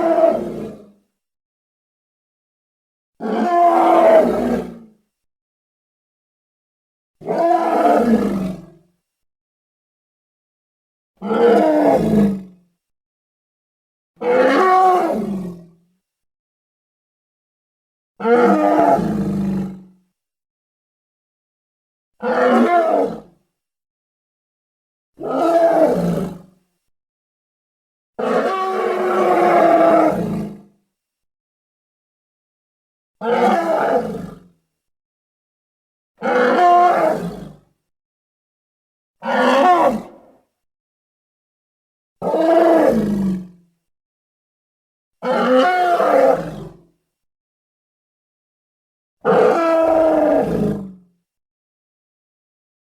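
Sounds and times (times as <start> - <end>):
gorilla roaring: 3.4 - 4.6, 7.3 - 8.6, 28.2 - 30.5, 33.4 - 34.4, 36.3 - 37.6, 39.2 - 40.3, 42.3 - 43.5, 49.3 - 50.6.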